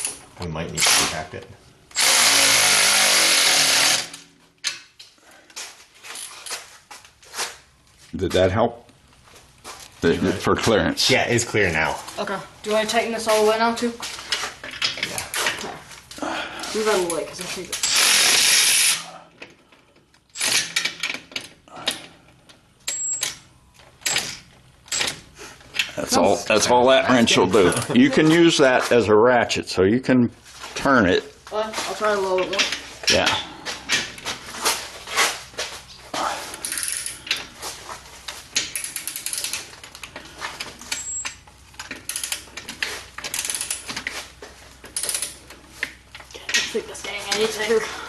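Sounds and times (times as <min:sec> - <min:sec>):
electric ratchet wrench bursts: 0:01.9 - 0:04.2, 0:17.8 - 0:19.1
ratchet wrench clicking: 0:17.8 - 0:19.0, 0:36.6 - 0:37.2, 0:38.6 - 0:40.0, 0:40.9 - 0:42.5, 0:43.2 - 0:43.9, 0:44.9 - 0:45.4.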